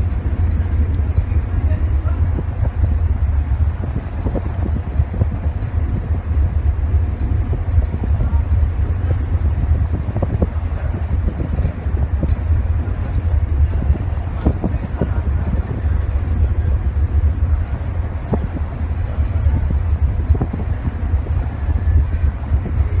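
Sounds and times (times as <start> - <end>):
ship engine running: 0.0 - 23.0
wind rumble on microphone: 0.0 - 23.0.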